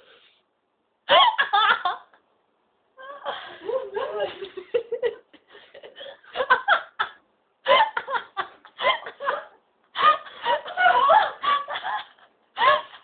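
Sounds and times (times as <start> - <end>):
person laughing: 3.3 - 13.0.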